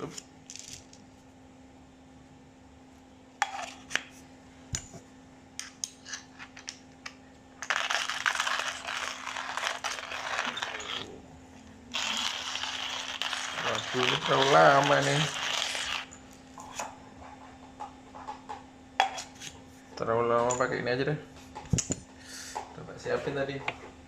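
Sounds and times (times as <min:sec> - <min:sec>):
coffee beans crunching in grinder: 0:07.6 - 0:11.1, 0:11.9 - 0:16.2.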